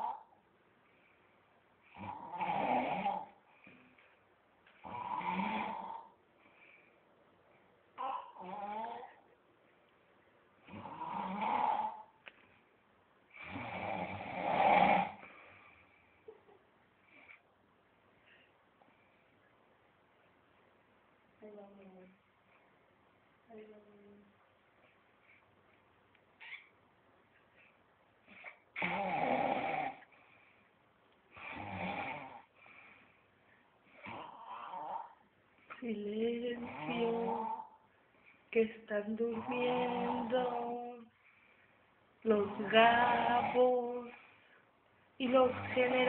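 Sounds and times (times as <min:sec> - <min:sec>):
man snoring: 0:01.9 - 0:03.3, 0:04.8 - 0:06.1, 0:10.7 - 0:12.0, 0:13.4 - 0:15.2, 0:28.8 - 0:30.0, 0:31.4 - 0:32.5, 0:36.6 - 0:37.6, 0:39.4 - 0:40.6, 0:42.6 - 0:43.9.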